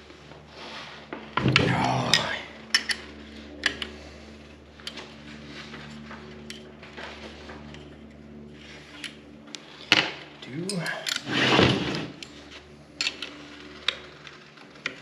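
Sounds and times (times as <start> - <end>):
steady low hum: 0.0 - 15.0
metal wrench scraping clatter: 2.1 - 3.8.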